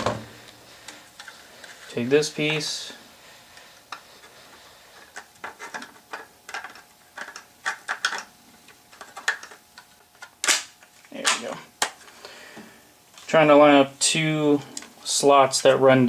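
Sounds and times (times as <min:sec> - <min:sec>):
plastic parts clicking and tapping: 0:05.0 - 0:12.1.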